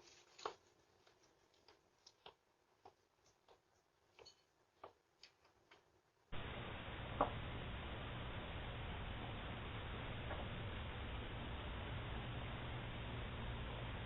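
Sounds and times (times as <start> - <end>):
faint clicks and taps: 0.1 - 11.0
steady hiss: 6.3 - 14.0.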